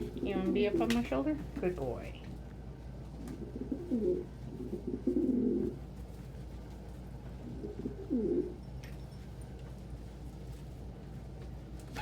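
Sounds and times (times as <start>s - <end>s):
pigeons cooing: 3.3s - 5.8s, 7.4s - 8.6s.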